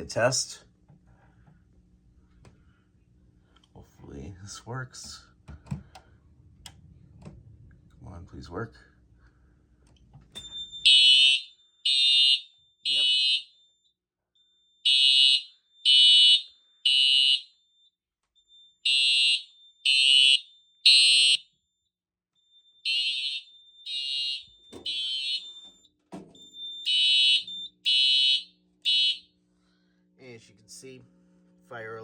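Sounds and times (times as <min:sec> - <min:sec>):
fire alarm horn blasts: 0:10.5 - 0:13.8, 0:14.7 - 0:17.8, 0:18.6 - 0:21.4, 0:22.6 - 0:29.4.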